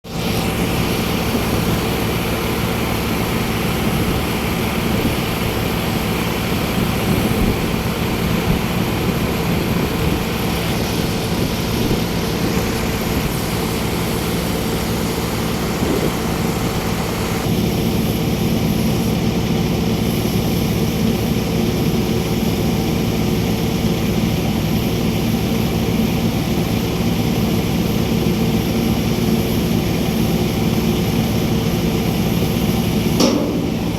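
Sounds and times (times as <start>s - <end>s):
engine droning hum: 31.7s - 33.9s.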